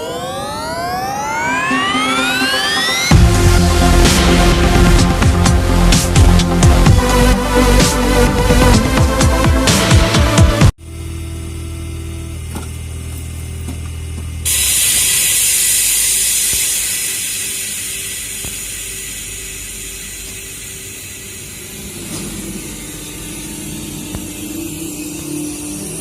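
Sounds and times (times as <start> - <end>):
train electric hum: 0.0 - 26.0
air hiss released: 14.5 - 24.8.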